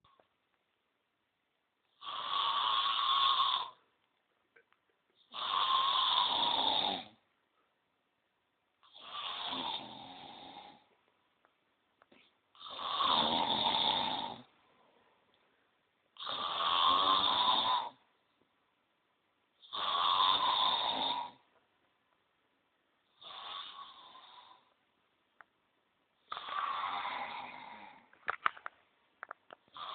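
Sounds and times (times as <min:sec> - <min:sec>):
person snoring: 0:01.9 - 0:03.8, 0:05.2 - 0:07.2, 0:08.8 - 0:10.9, 0:12.5 - 0:14.5, 0:16.2 - 0:18.0, 0:19.6 - 0:21.4, 0:23.1 - 0:24.7, 0:26.2 - 0:28.2
quiet breathing: 0:11.9 - 0:17.0, 0:26.2 - 0:28.7.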